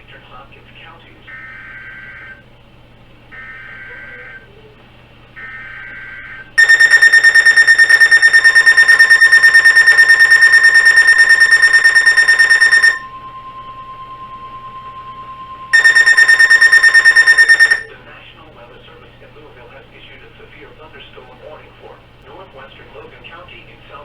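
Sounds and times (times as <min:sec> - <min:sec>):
steady warning tone: 0:00.9 - 0:18.0
rapidly pulsing electronic beep: 0:05.4 - 0:17.9
screechy digital data burst: 0:05.4 - 0:17.9.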